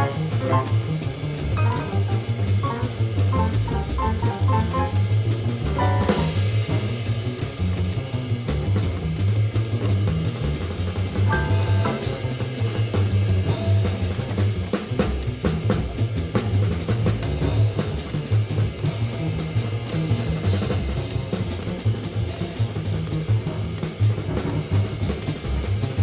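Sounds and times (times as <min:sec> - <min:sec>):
drum kit playing: 0:00.0 - 0:07.2, 0:10.9 - 0:14.2
live jazz band: 0:00.0 - 0:26.0.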